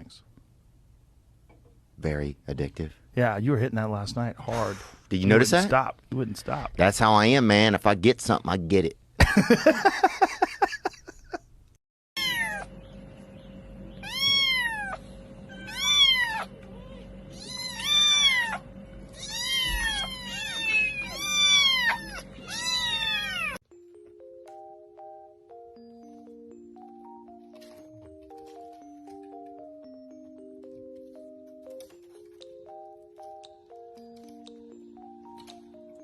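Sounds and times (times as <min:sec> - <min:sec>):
cat meowing: 0:12.2 - 0:12.7, 0:14.0 - 0:23.6.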